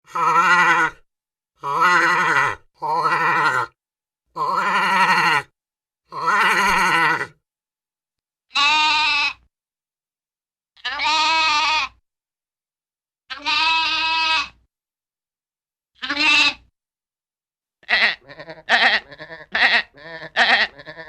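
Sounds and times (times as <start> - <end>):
cartoon sheep bleating: 0.1 - 1.0, 1.6 - 3.8, 4.4 - 5.5, 6.1 - 7.4, 8.5 - 9.5, 10.8 - 12.0, 13.3 - 14.6, 16.0 - 16.7, 17.8 - 21.0.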